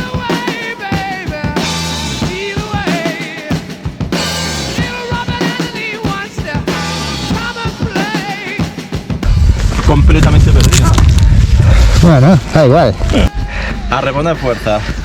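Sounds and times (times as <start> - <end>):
drum kit beat: 0.0 - 9.6
bass notes: 9.2 - 15.0.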